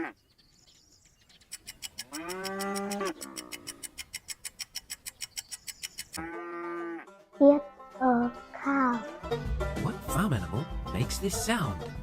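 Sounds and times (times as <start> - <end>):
rapid even ticking: 1.4 - 6.2
cow mooing: 2.0 - 3.8, 6.2 - 7.1.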